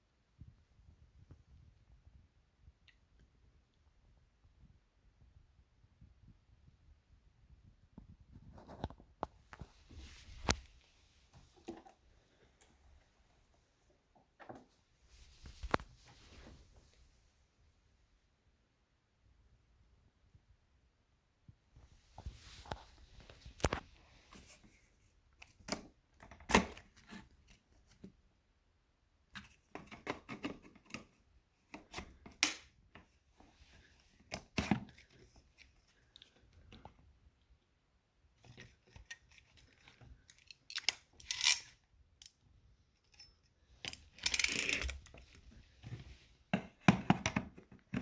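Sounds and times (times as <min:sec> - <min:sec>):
rustling scrapes: 0:09.6 - 0:11.7
handling clicks and knocks: 0:43.0 - 0:48.0.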